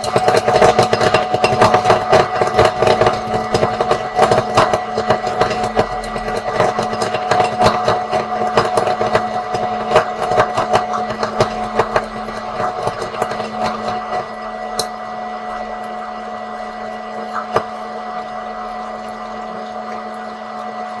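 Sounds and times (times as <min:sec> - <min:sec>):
popcorn kernels popping: 0:00.0 - 0:21.0
steady electric hum: 0:00.0 - 0:21.0.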